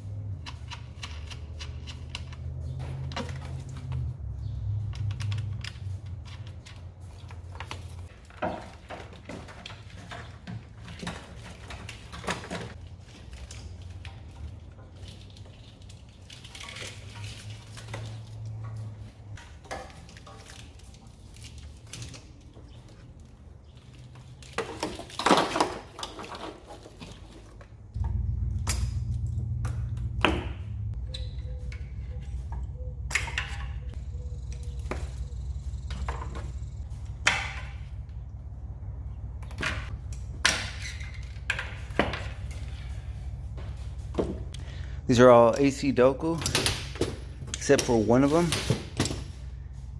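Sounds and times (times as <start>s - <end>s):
low steady hum: 27.6s - 47.9s.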